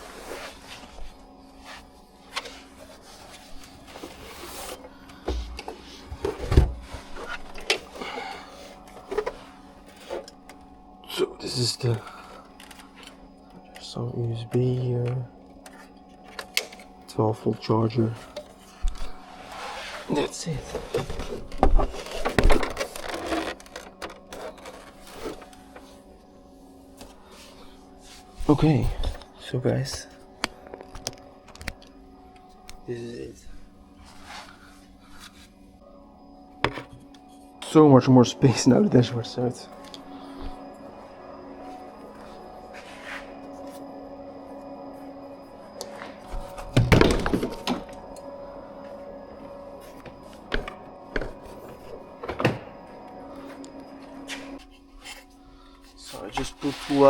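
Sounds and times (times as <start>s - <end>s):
faint steady hum: 0.0s - 57.0s
knocks and clattering of plastic parts: 20.8s - 24.8s, 46.8s - 47.9s.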